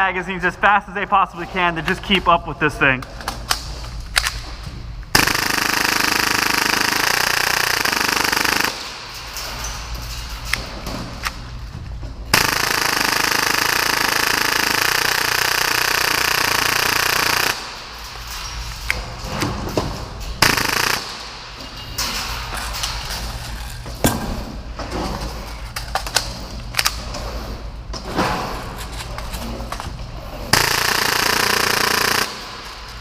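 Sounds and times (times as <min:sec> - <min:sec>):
airsoft pistol firing bursts: 0:05.2 - 0:08.9, 0:12.3 - 0:17.8, 0:20.4 - 0:21.2, 0:30.5 - 0:32.6.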